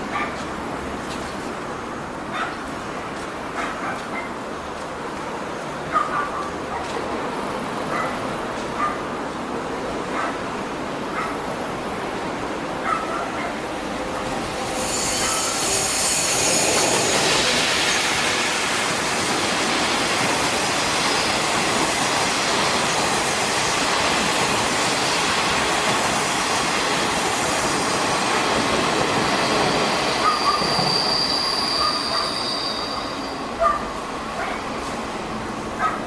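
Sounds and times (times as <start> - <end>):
train wheels rumbling on rails: 0.0 - 36.0
high wheel squeal: 14.5 - 18.2, 29.1 - 34.0.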